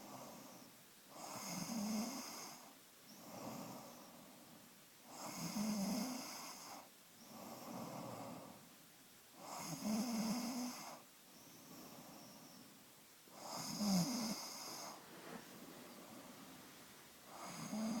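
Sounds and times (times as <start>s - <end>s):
person snoring: 17.3s - 18.0s.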